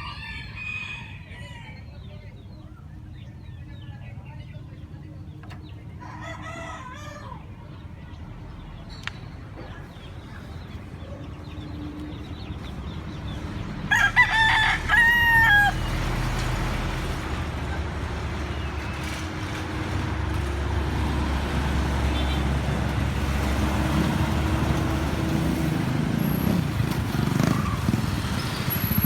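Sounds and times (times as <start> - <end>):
rooster crowing: 0.0 - 1.9, 6.0 - 7.5, 13.9 - 16.2.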